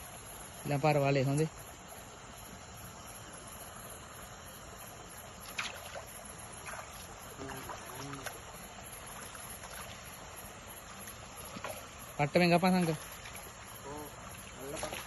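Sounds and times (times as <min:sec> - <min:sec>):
steady background hiss: 0:00.0 - 0:15.0
water moving faintly: 0:00.0 - 0:15.0
light splashes: 0:05.2 - 0:15.0.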